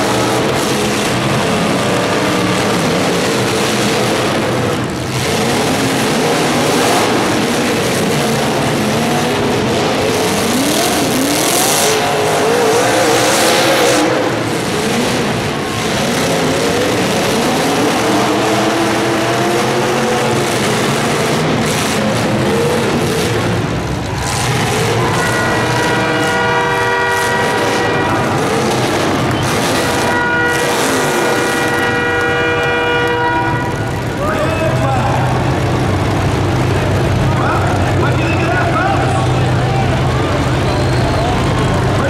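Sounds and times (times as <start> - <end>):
vehicle engines revving: 0.0 - 42.0
loud air horn chord: 25.1 - 28.6, 29.9 - 33.9.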